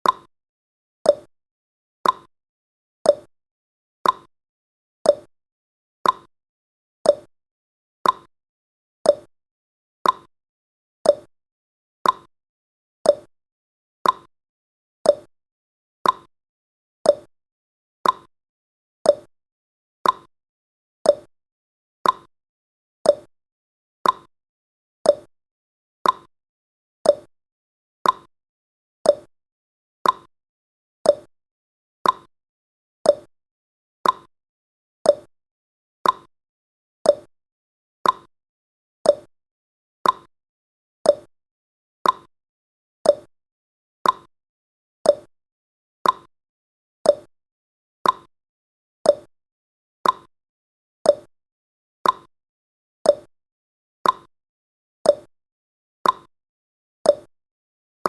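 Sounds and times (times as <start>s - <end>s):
timer ticking: 0.0s - 0.3s, 1.1s - 1.3s, 2.0s - 2.3s, 3.1s - 3.3s, 4.0s - 4.3s, 5.1s - 5.3s, 6.0s - 6.3s, 7.1s - 7.3s, 8.0s - 8.3s, 9.1s - 9.3s, 10.0s - 10.3s, 11.1s - 11.3s, 12.0s - 12.3s, 13.1s - 13.3s, 14.0s - 14.3s, 15.1s - 15.3s, 16.0s - 16.3s, 17.1s - 17.3s, 18.0s - 18.3s, 19.1s - 19.3s, 20.0s - 20.3s, 21.1s - 21.3s, 22.0s - 22.3s, 23.1s - 23.3s, 24.0s - 24.3s, 25.1s - 25.3s, 26.0s - 26.3s, 27.0s - 27.3s, 28.0s - 28.3s, 29.1s - 29.3s, 30.0s - 30.3s, 31.1s - 31.3s, 32.0s - 32.3s, 33.1s - 33.3s, 34.0s - 34.3s, 35.1s - 35.3s, 36.0s - 36.3s, 37.1s - 37.3s, 38.0s - 38.3s, 39.1s - 39.3s, 40.0s - 40.3s, 41.1s - 41.3s, 42.0s - 42.3s, 43.0s - 43.3s, 44.0s - 44.3s, 45.1s - 45.3s, 46.0s - 46.3s, 47.1s - 47.3s, 48.0s - 48.3s, 49.1s - 49.3s, 50.0s - 50.3s, 51.1s - 51.3s, 52.0s - 52.3s, 53.1s - 53.3s, 54.0s - 54.3s, 55.1s - 55.3s, 56.0s - 56.3s, 57.1s - 57.3s.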